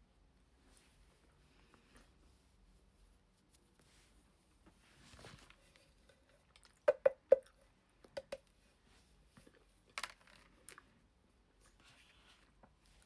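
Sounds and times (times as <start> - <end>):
rustling: 0.6 - 6.6.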